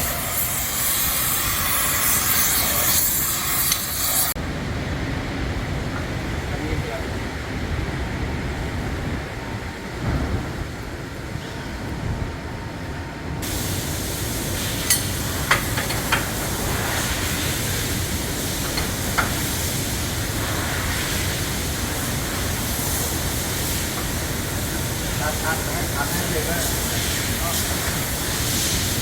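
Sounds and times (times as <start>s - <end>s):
loud air hiss: 0.0s - 4.4s, 13.4s - 29.0s.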